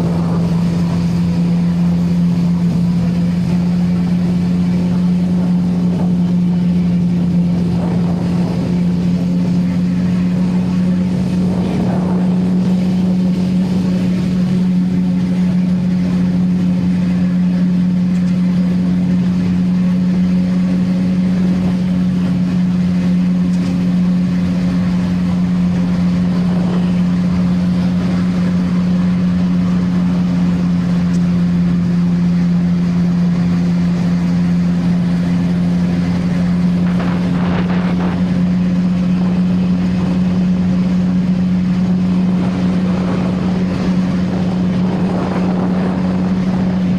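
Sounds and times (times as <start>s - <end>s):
motorcycle engine cruising: 34.6s - 46.9s.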